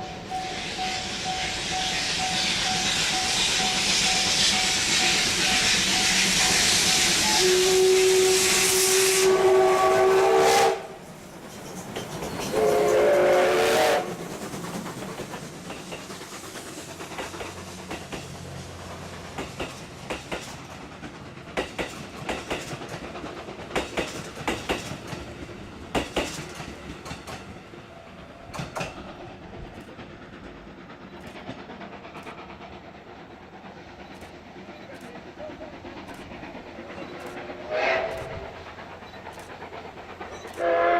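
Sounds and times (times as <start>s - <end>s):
steam locomotive whistle blasts: 0.0s - 11.1s, 12.5s - 14.2s, 37.6s - 38.6s, 40.5s - 40.9s
train wheels clicking over rail joints: 0.0s - 40.9s.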